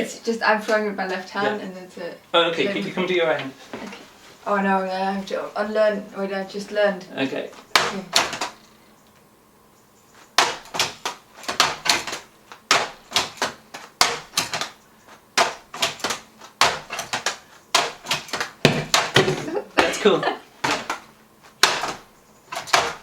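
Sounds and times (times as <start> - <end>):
balls striking a contraption: 7.7 - 8.6, 10.4 - 23.0.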